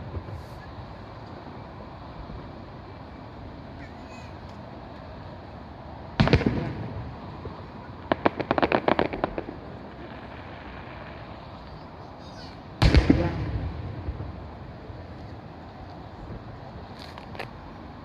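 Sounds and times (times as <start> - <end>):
firework crackles: 0.0 - 3.1, 6.1 - 17.6
firework bang with echo: 6.2 - 11.1, 12.8 - 14.5.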